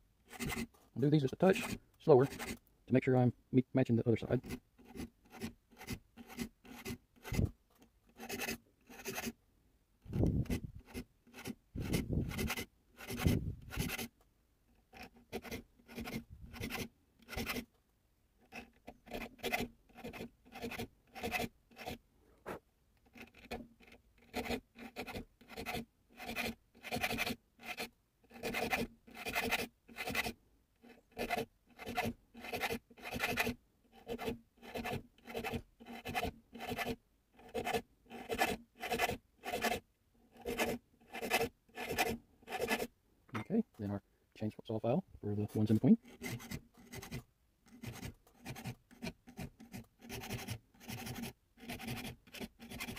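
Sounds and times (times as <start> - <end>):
file rasping on metal: 0.3 - 0.7, 1.3 - 2.6, 4.2 - 9.4, 10.2 - 14.1, 14.8 - 17.7, 18.4 - 22.0, 23.0 - 42.9, 45.6 - 52.9.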